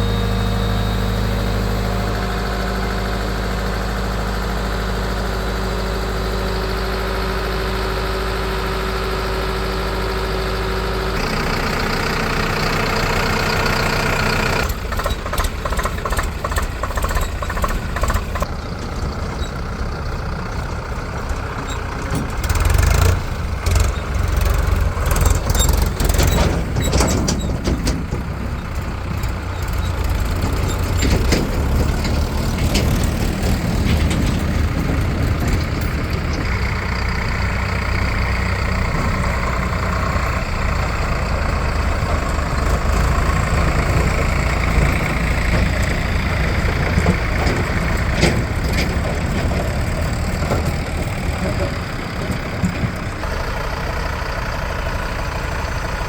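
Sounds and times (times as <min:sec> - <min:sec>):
heavy vehicle engine running: 0:00.0 - 0:56.0
knocks and clanks: 0:21.2 - 0:37.1, 0:42.1 - 0:53.2.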